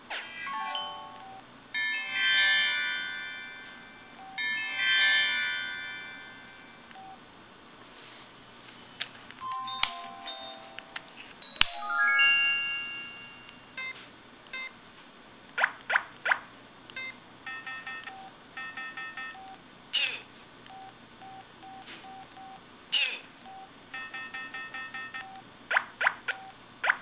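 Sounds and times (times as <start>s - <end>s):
chime-like chords: 0.2s - 1.2s, 1.8s - 6.8s, 9.4s - 13.8s.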